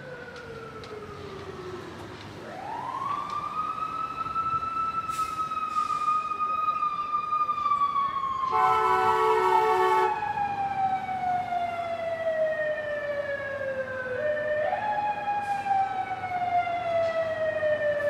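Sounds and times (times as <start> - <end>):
fire truck siren wailing: 0.0 - 18.0
fire truck horn blast: 8.5 - 10.2.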